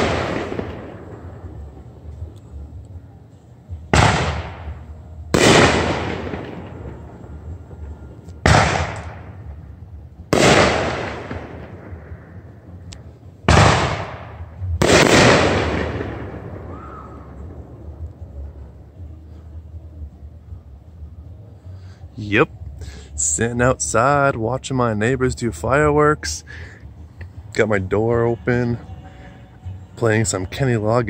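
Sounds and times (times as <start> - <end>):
fireworks bangs echoing: 0.0 - 2.2, 3.9 - 9.6, 10.3 - 12.5, 13.4 - 17.8.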